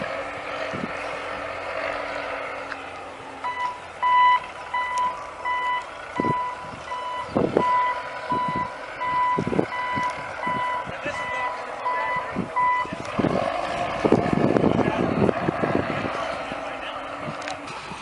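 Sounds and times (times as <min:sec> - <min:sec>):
backup alarm beeping: 0:03.4 - 0:13.0.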